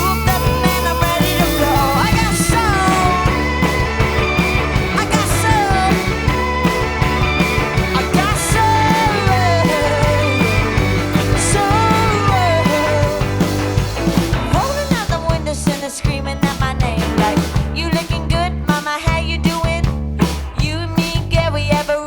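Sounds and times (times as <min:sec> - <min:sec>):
lead with sliding falling notes: 0:00.0 - 0:15.1
bass guitar: 0:00.0 - 0:22.0
drums: 0:00.0 - 0:22.0.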